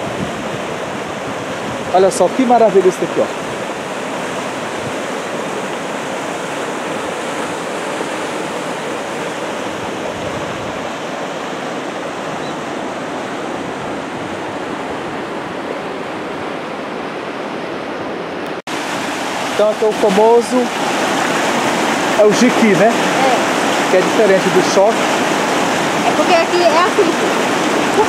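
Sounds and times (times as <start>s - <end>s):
water rushing over rocks: 0.0s - 28.0s.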